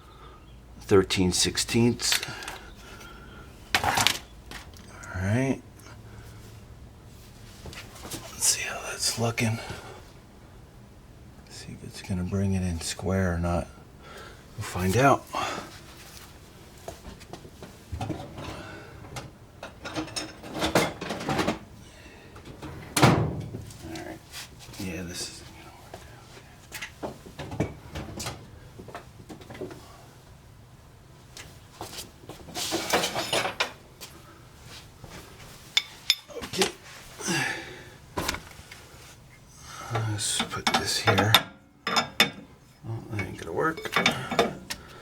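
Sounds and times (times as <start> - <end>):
metal tools clinking and clanking: 2.0 - 2.6, 18.0 - 21.6, 32.6 - 33.8, 35.8 - 36.8, 40.0 - 42.5, 43.2 - 44.8.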